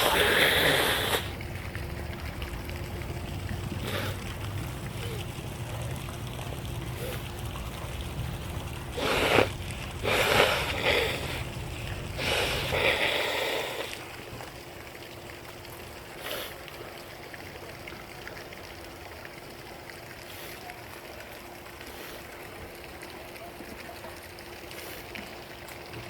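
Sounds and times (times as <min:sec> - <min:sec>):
shower water running: 0:00.0 - 0:14.5.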